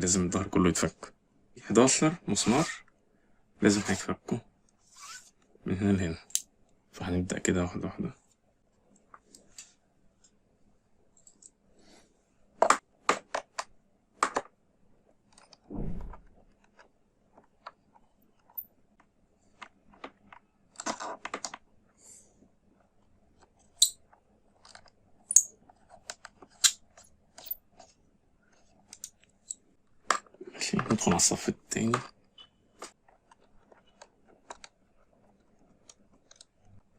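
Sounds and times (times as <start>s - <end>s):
dull low thump: 15.7s - 16.2s.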